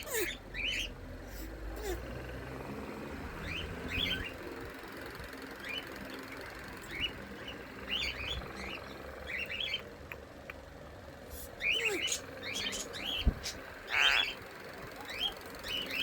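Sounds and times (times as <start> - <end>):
lorikeet chirping: 0.0 - 1.6, 3.3 - 4.5, 5.6 - 10.6, 11.3 - 16.0.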